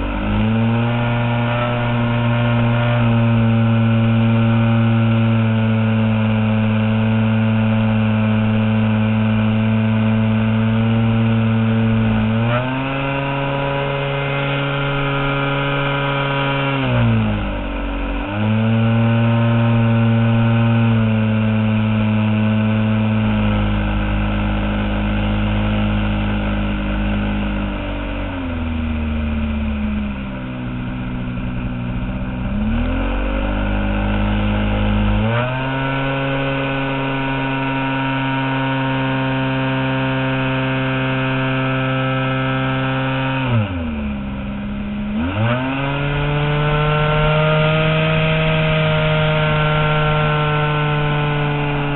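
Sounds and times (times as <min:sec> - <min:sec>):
model airplane engine in flight: 0:00.0 - 0:51.9.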